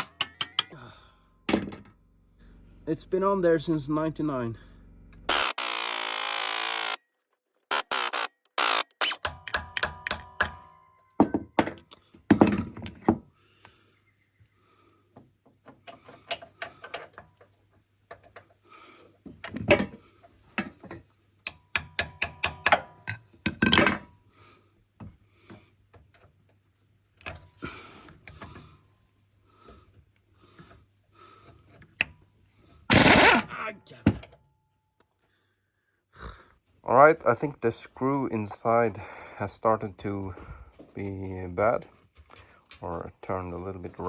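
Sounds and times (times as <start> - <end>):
socket ratchet clicking: 0.0 - 0.7, 5.3 - 7.0, 7.7 - 10.7, 32.9 - 33.4
tools knocking on metal: 11.2 - 13.2, 21.8 - 23.7.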